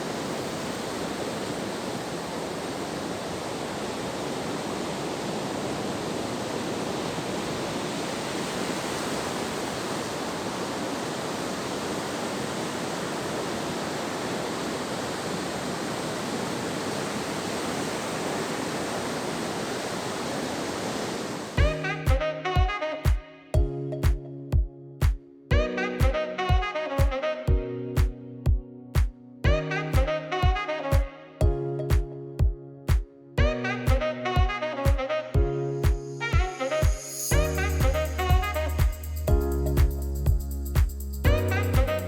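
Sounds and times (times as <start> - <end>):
wind on the beach: 0.0 - 22.2
ocean surf: 0.0 - 23.5
music with a strong beat: 21.6 - 42.0.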